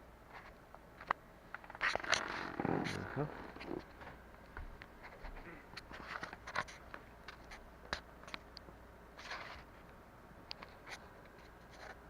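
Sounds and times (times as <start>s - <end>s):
soft rustles: 5.0s - 7.6s.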